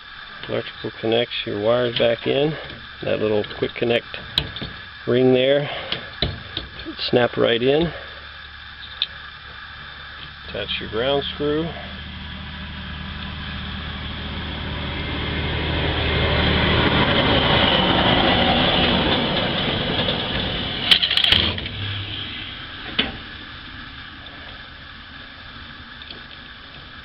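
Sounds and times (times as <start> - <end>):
road noise: 0.0 - 27.0
vehicle engine passing by: 10.5 - 22.7.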